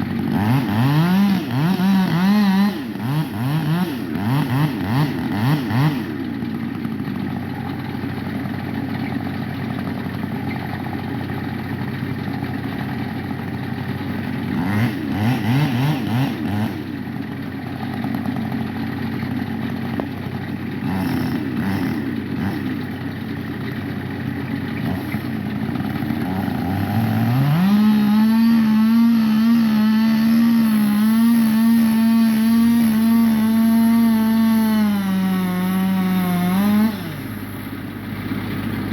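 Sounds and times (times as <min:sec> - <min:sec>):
chainsaw revving: 0:00.0 - 0:06.3, 0:14.4 - 0:17.1, 0:19.4 - 0:23.8, 0:24.7 - 0:38.1.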